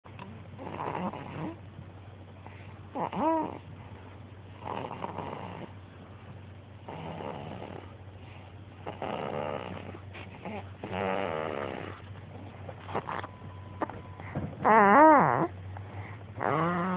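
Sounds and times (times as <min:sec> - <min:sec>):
baby snoring: 0:00.6 - 0:01.6, 0:02.9 - 0:03.7, 0:04.6 - 0:05.7, 0:06.8 - 0:08.0, 0:08.8 - 0:12.1, 0:14.6 - 0:15.5, 0:16.4 - 0:16.9.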